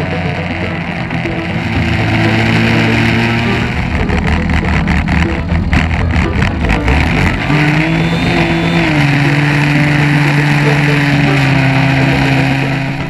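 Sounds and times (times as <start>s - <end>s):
chainsaw running at high revs: 0.0s - 13.0s.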